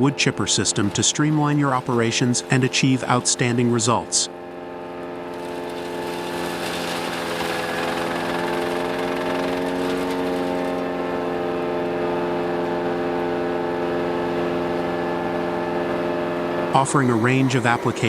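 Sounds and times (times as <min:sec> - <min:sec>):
wood chipper running: 0:00.0 - 0:18.0.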